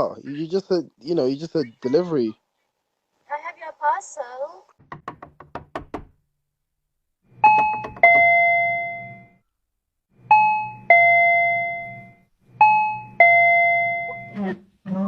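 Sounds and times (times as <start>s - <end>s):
doorbell two-tone chime: 7.5s - 9.3s, 10.4s - 14.4s.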